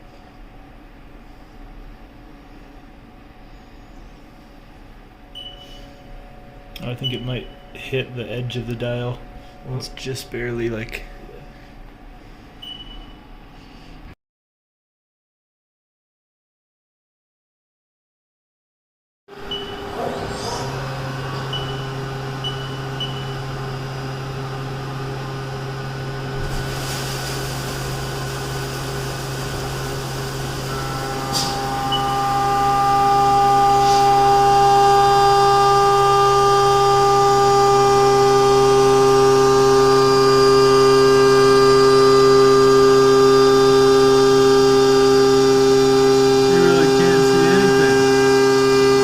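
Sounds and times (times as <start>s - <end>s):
milling machine whining: 19.4s - 49.0s.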